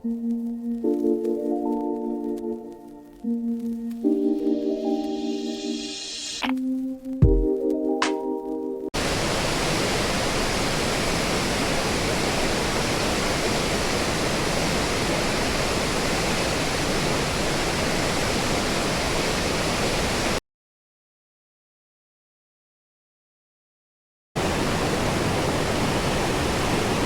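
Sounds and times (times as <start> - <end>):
waterfall rushing: 9.0 - 20.4, 24.4 - 27.0.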